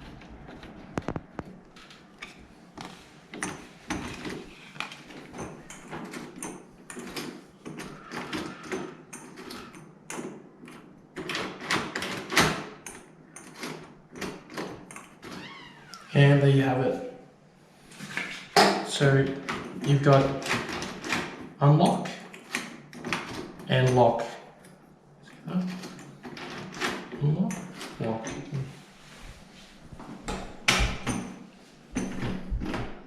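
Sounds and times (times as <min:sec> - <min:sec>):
clicks and scrapes on door hardware: 0:03.3 - 0:15.2.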